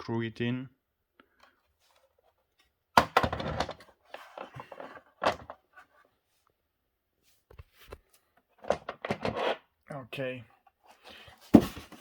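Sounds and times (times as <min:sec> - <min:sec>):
parts knocking together: 0:03.0 - 0:05.6, 0:11.5 - 0:12.0
clattering and scraping: 0:03.0 - 0:06.0, 0:08.6 - 0:09.6.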